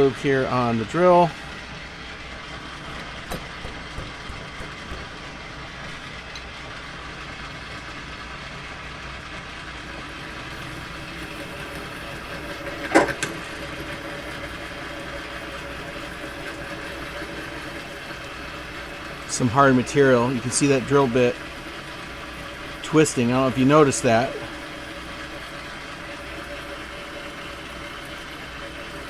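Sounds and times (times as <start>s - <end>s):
lathe machine hum: 0.0s - 29.0s
drill cutting sound: 14.0s - 29.0s.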